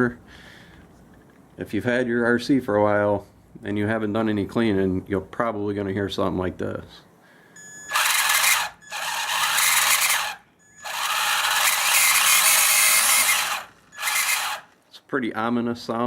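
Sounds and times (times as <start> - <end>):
electric motor squealing grind: 7.9 - 14.8.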